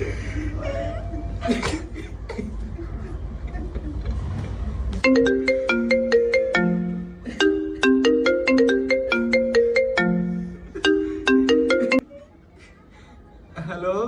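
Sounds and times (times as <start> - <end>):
marimba phone ringtone: 5.0 - 12.0.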